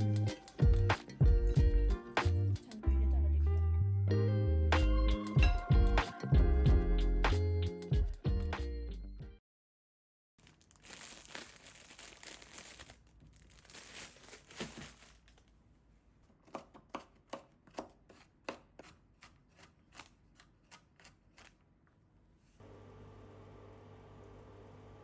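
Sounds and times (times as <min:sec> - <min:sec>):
crinkling and rustling: 0:10.4 - 0:16.4
knife chopping on cutting board: 0:16.4 - 0:21.2.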